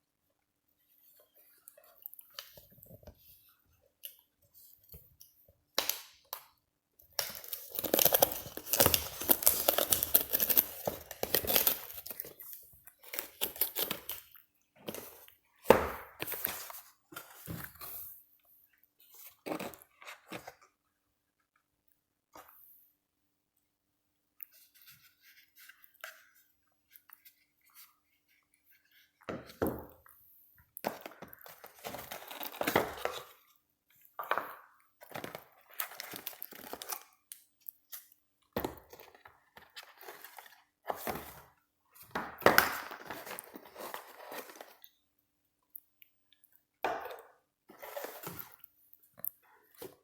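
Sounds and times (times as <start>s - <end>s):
packaging rustling and tearing: 7.2s - 14.3s, 31.0s - 33.4s, 35.1s - 37.1s, 42.6s - 44.8s.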